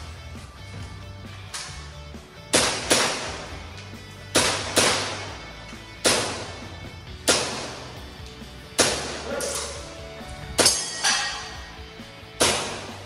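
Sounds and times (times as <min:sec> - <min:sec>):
background music: 0:00.0 - 0:13.0
airsoft pistol shots: 0:02.5 - 0:03.6, 0:04.3 - 0:05.4, 0:06.0 - 0:08.0, 0:08.8 - 0:09.4, 0:12.4 - 0:13.0.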